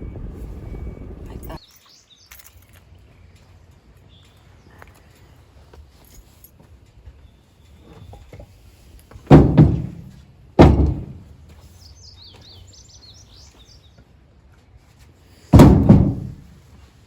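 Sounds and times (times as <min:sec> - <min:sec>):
small bird chirping: 0:01.5 - 0:05.1, 0:11.7 - 0:14.0
car doors shutting: 0:15.6 - 0:16.5.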